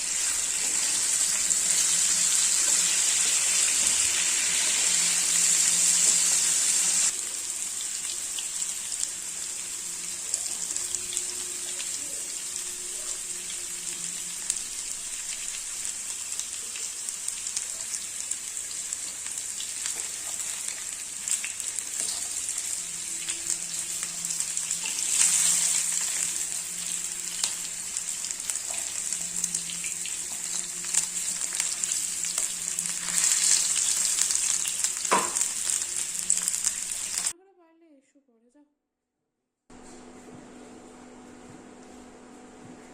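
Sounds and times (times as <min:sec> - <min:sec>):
food sizzling in hot oil: 0:00.0 - 0:37.3.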